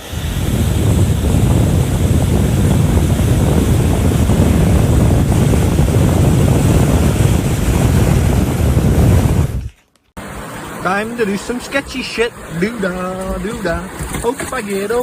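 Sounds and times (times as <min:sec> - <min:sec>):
wind buffeting microphone: 0:00.0 - 0:09.8.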